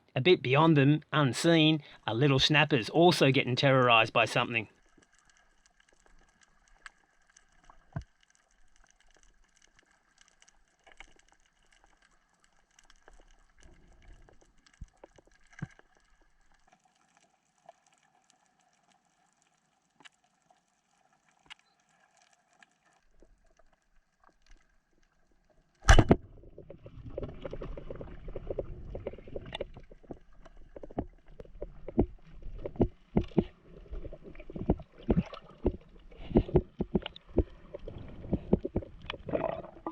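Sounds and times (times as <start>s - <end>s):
underwater ambience: 0.0s - 39.9s
splashing and bubbling water: 19.9s - 39.9s
small clicks: 21.2s - 25.1s.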